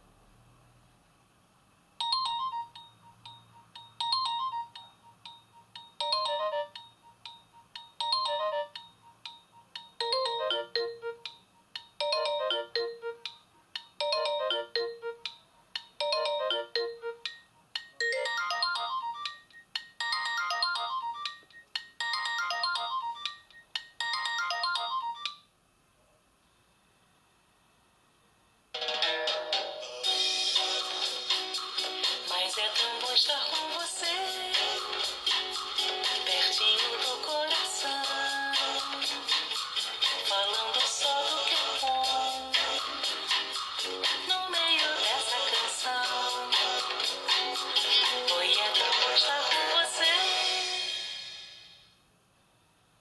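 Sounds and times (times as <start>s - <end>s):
electronic phone ringtone melody: 2.0s - 13.4s, 14.0s - 25.5s.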